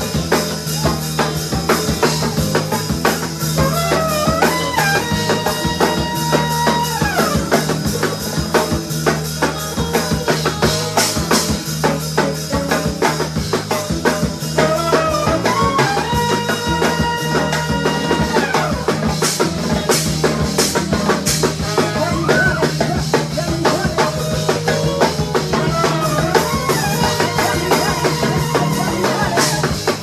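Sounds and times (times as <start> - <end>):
bass line: 0.0 - 30.0
drum kit beat: 0.0 - 30.0
sliding melody notes: 14.4 - 30.0.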